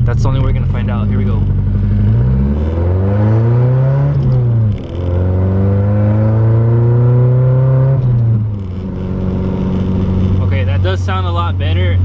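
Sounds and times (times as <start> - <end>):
car engine accelerating hard: 0.0 - 12.0
gear change: 0.0 - 12.0.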